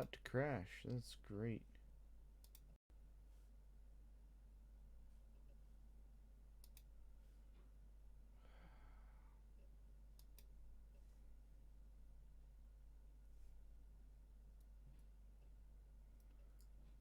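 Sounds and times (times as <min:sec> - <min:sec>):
low electrical hum: 0:00.0 - 0:17.0
faint clicks: 0:06.6 - 0:06.9.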